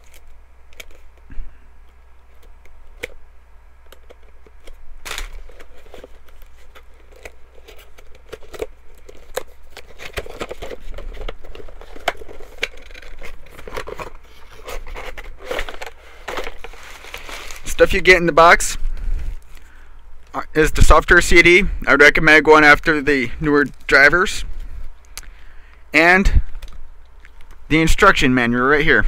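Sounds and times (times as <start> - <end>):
cardboard box being opened: 5.1 - 17.7.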